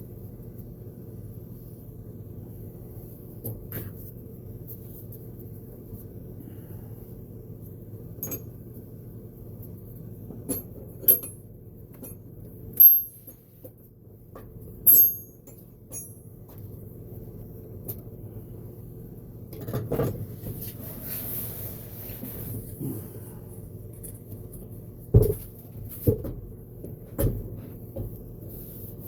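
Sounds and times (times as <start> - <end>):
steady low hum: 0.0 - 29.0
rubbing shuffle: 20.3 - 22.8, 28.4 - 29.0.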